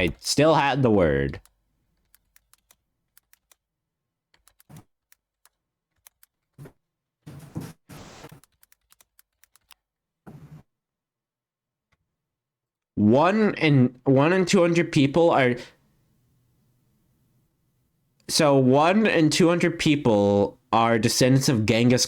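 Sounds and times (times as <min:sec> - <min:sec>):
computer keyboard typing: 0:01.4 - 0:03.6, 0:08.4 - 0:09.8.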